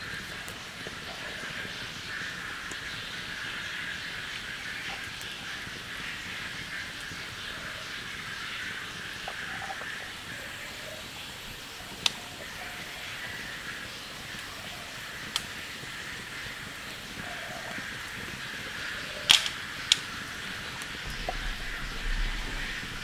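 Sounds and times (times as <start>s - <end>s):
rain hiss: 0.1s - 23.0s
sharp clicks: 19.3s - 20.1s, 21.0s - 23.0s.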